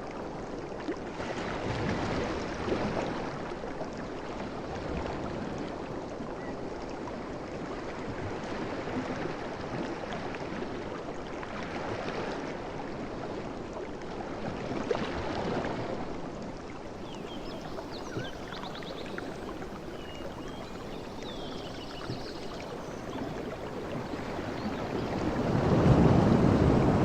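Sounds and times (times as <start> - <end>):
sea waves washing in: 16.9 - 27.0
high bird chirps: 17.0 - 23.6.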